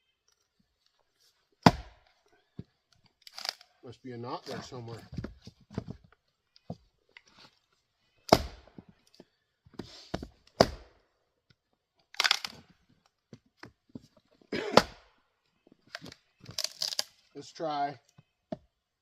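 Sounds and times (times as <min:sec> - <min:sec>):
axe chopping wood: 0:01.6 - 0:02.1, 0:08.3 - 0:08.8, 0:10.5 - 0:11.0, 0:14.6 - 0:15.1
wood cracking: 0:01.6 - 0:03.8, 0:12.0 - 0:13.1, 0:15.8 - 0:17.3.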